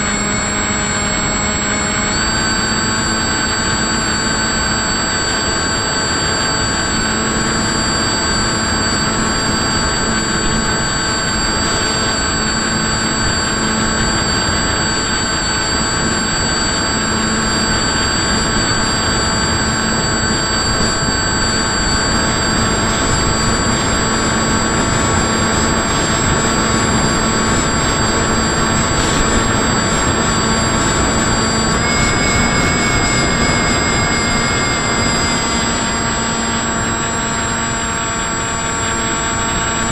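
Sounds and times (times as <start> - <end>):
electric motor and propeller whine: 0.0 - 39.9
wind rush: 0.1 - 39.9.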